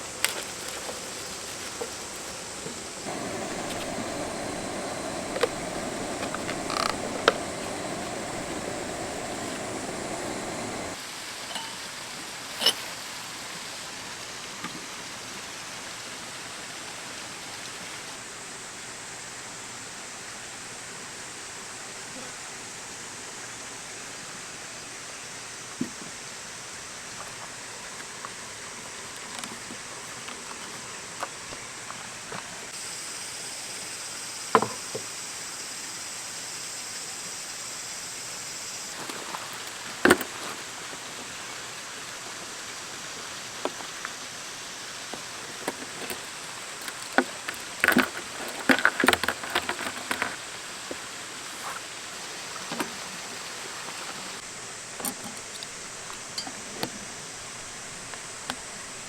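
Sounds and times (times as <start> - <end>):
steady outdoor hiss: 0.0 - 59.0
sharp clicks and knocks: 3.1 - 11.0.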